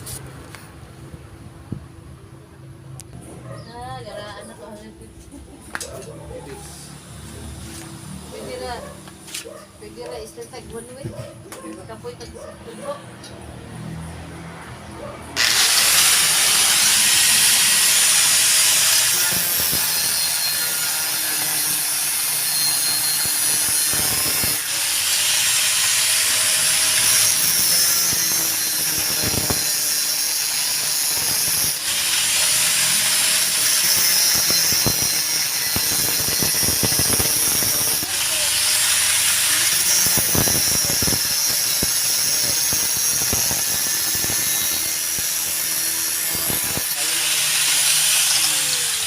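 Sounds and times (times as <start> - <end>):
angle grinder cutting metal pipe: 15.4 - 49.0.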